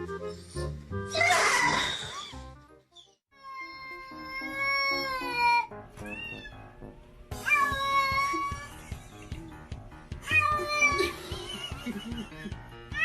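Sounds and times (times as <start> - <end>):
cat meowing: 3.4 - 6.6
background music with beat: 8.9 - 13.0.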